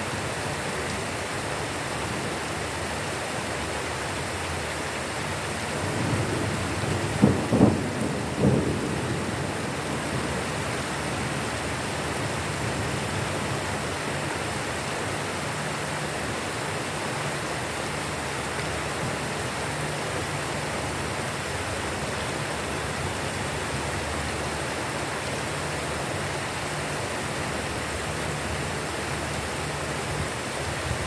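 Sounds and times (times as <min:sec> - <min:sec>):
steady rain: 0:00.0 - 0:31.0
thunder rumble and cracks: 0:05.8 - 0:13.7.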